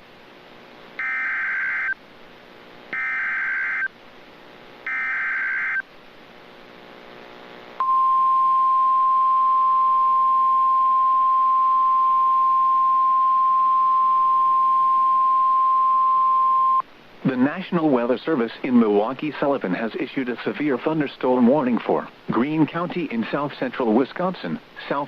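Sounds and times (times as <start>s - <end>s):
steady warning alarm tone: 1.0s - 2.0s, 3.0s - 3.9s, 4.9s - 5.8s.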